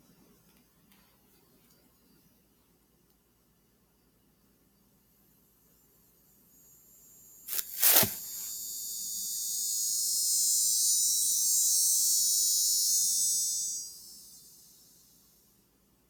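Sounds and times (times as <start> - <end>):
cicadas droning: 6.2 - 15.6
brief scratchy sounds: 7.5 - 8.4.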